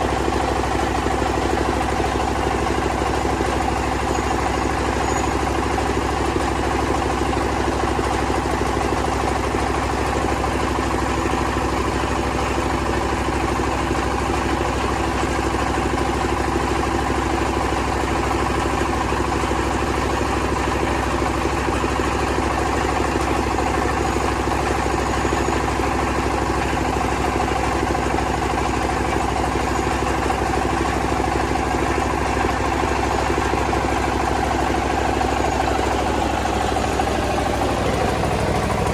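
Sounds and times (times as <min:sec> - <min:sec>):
milling machine droning: 0:19.3 - 0:38.9.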